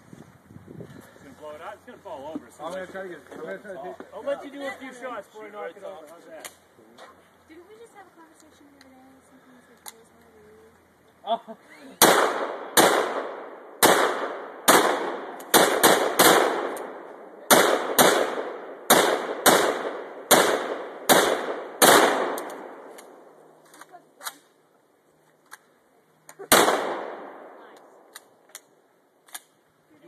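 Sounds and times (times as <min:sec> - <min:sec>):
gun handling clicks: 0:09.8 - 0:10.3, 0:22.3 - 0:24.5, 0:25.4 - 0:25.7, 0:27.8 - 0:29.6
gunshots with echo: 0:12.0 - 0:22.8, 0:26.5 - 0:27.5.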